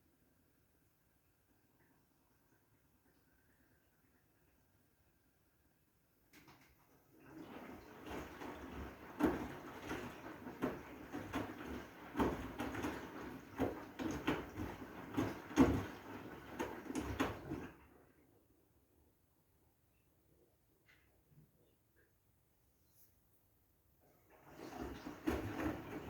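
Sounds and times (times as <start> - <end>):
washing machine drum swishing: 7.2 - 18.0, 24.3 - 26.0.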